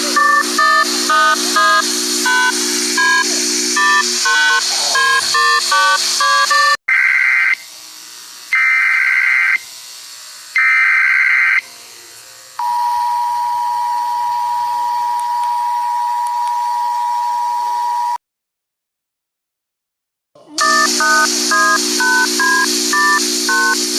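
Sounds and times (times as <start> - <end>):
harsh two-tone attention signal: 0.0 - 6.8, 20.6 - 23.9
stepping electronic beeps: 0.0 - 6.8, 20.6 - 23.9
buzzy digital header bursts: 0.0 - 7.8, 8.5 - 9.7, 10.6 - 11.6, 20.6 - 23.9.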